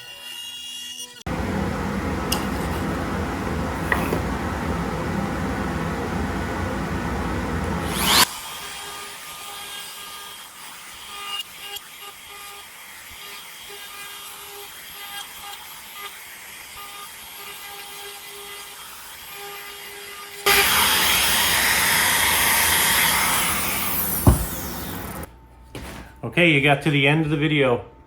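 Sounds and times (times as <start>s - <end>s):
motor whine: 1.3s - 8.3s, 20.5s - 25.3s.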